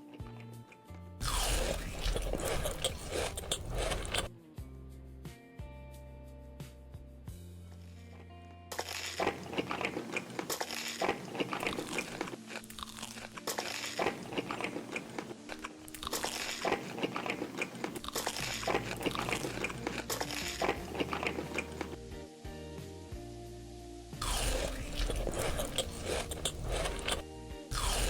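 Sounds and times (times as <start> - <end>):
person chewing crunchy food: 1.2 - 4.3, 8.8 - 22.0, 24.2 - 28.0.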